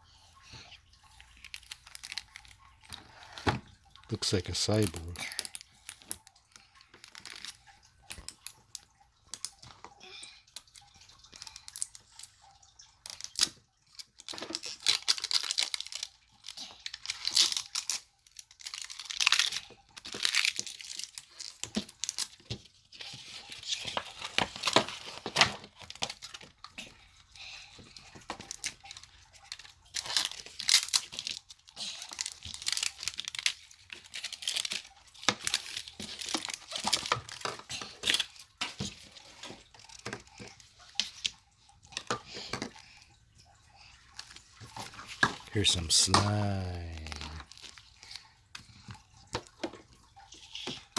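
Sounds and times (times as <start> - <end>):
packaging tearing and crinkling: 46.1 - 47.8.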